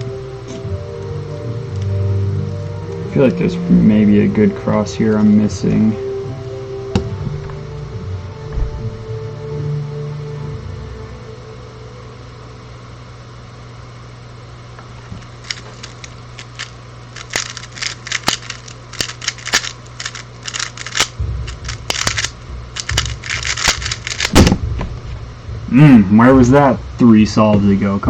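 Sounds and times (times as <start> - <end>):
steady low hum: 0.0 - 28.0
plastic cube clicking: 15.4 - 24.4.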